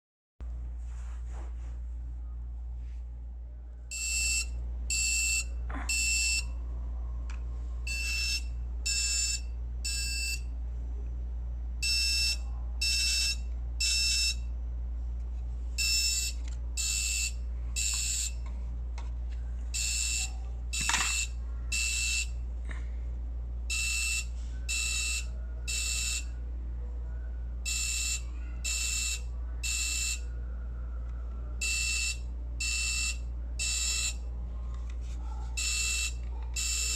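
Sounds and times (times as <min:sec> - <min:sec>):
steady low hum: 0:00.4 - 0:36.9
smoke alarm beeping: 0:03.9 - 0:06.6, 0:07.9 - 0:10.5, 0:11.8 - 0:14.4, 0:15.8 - 0:18.4, 0:19.7 - 0:22.4, 0:23.7 - 0:26.3, 0:27.6 - 0:30.3, 0:31.6 - 0:34.2, 0:35.6 - 0:36.9.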